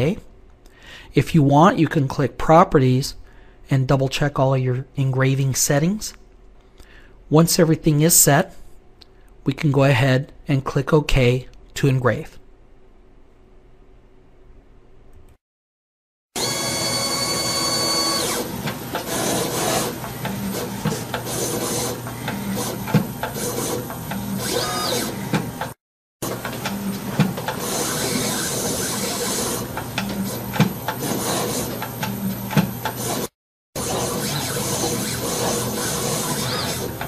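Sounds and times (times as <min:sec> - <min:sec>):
cutter scratching metal: 0:16.4 - 0:25.8, 0:27.5 - 0:32.0, 0:32.9 - 0:37.0
engraver motor whine: 0:16.4 - 0:37.0
motor whirs: 0:16.4 - 0:37.0.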